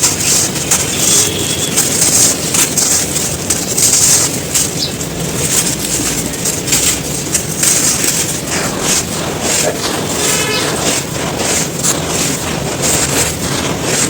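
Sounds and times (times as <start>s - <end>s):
sand chunks crunching: 0.0s - 14.0s.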